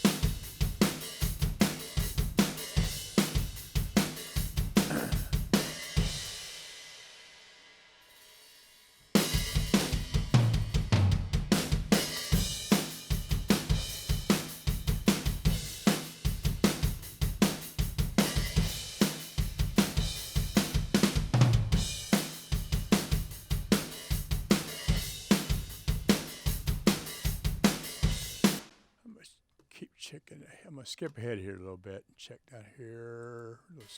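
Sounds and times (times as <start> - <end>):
drum kit groove: 0.0 - 7.1, 8.1 - 28.8
cymbals and hi-hat: 0.0 - 28.8.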